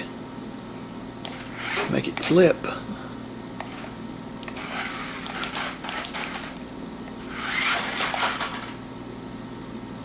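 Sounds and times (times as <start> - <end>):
toy car motor rattling: 1.2 - 2.3, 3.6 - 6.6, 7.2 - 8.8.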